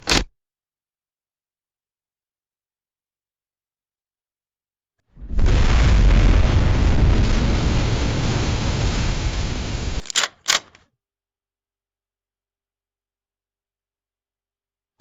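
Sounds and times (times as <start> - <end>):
loud rumbling hiss: 5.2 - 10.0
camera shutter clicks: 10.0 - 10.8.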